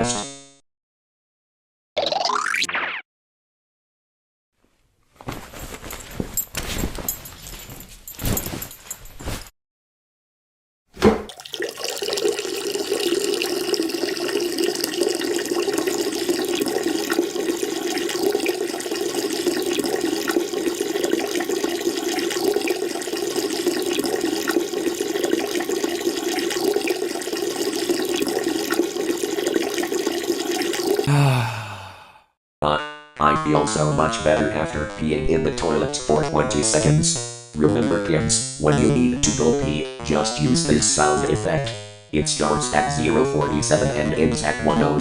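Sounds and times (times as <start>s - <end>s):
urine splashing into toilet water: 11.3s - 31.1s.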